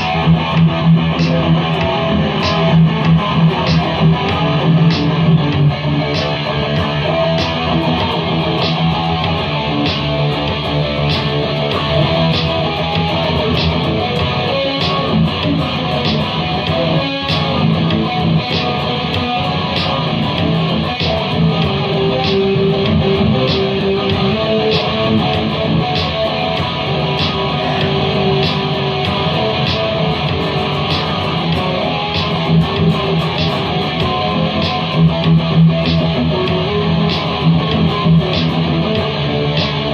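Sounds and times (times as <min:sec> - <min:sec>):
guitar music over a beat: 0:00.0 - 0:39.9
sharp percussive hits: 0:00.0 - 0:39.9.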